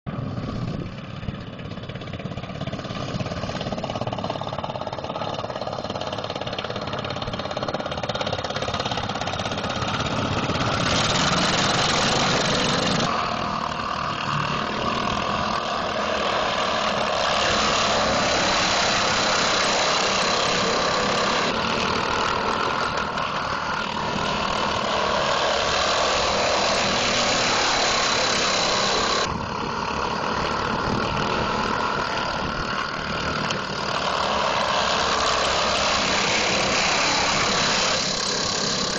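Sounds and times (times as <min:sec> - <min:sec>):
racing lawn mower engines: 0:00.1 - 0:38.9.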